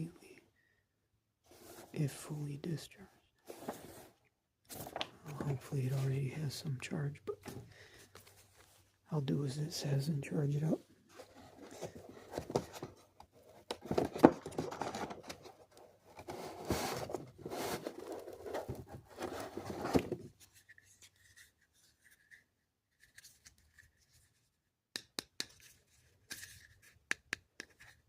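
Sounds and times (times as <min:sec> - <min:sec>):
plastic rustling and scraping: 0:03.5 - 0:06.6, 0:11.0 - 0:22.4.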